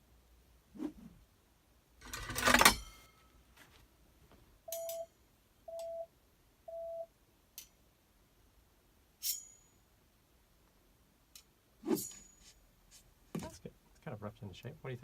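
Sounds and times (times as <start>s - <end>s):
short beeps: 5.7s - 6.1s, 6.7s - 7.1s
metallic swish with ringing clink: 9.2s - 9.8s, 11.8s - 12.6s.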